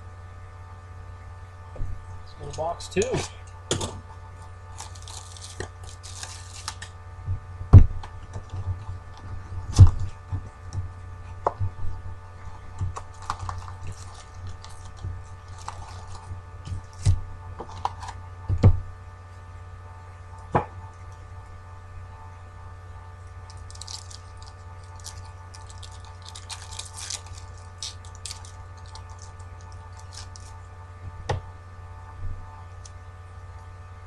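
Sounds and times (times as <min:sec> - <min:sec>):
steady electrical hum: 0:00.0 - 0:34.0
pack wrappers crinkling and tearing: 0:04.7 - 0:06.9, 0:13.0 - 0:18.2, 0:23.5 - 0:30.6.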